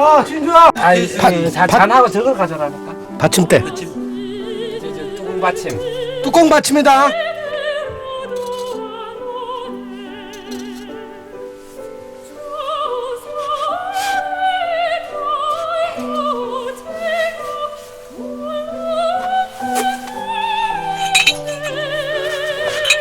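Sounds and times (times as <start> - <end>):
person singing with vibrato: 3.0 - 11.3.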